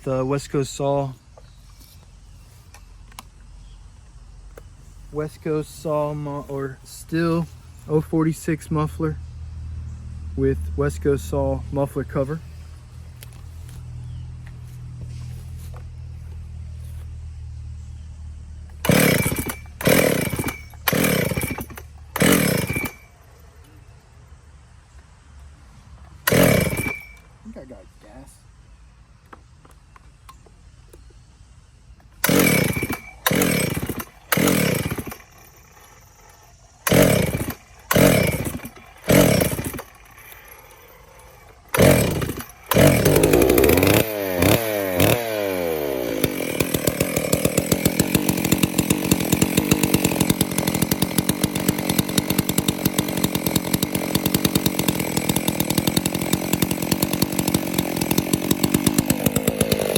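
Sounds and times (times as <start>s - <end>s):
chainsaw pull-starting and running: 4.6s - 9.1s, 10.7s - 23.4s, 26.1s - 27.4s, 32.0s - 59.9s.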